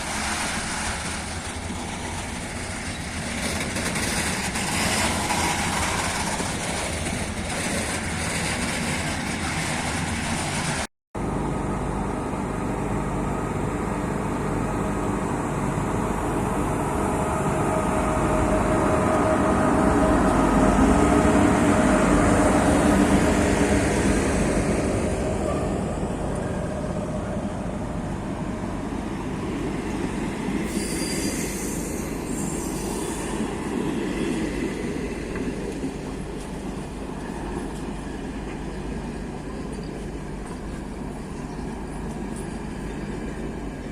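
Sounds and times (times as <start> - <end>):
train wheels rumbling: 0.0 - 10.9.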